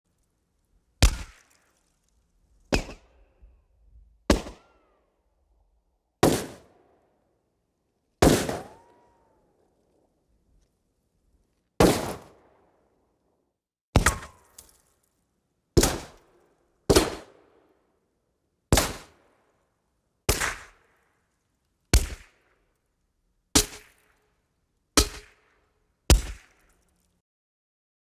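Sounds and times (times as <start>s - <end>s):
bullet ricochet cracks: 1.0s - 1.7s, 2.7s - 3.2s, 4.3s - 4.8s, 6.2s - 6.7s, 8.2s - 9.4s, 11.8s - 12.5s, 15.8s - 16.3s, 18.7s - 19.2s, 20.3s - 20.9s, 22.0s - 22.4s, 23.6s - 24.2s, 25.0s - 27.0s.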